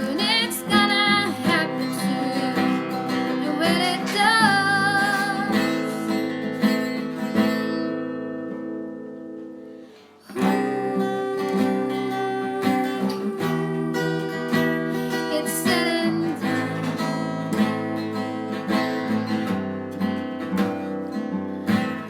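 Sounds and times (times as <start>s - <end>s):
person singing: 0.0s - 6.4s, 10.2s - 17.1s
guitar playing: 0.0s - 22.0s.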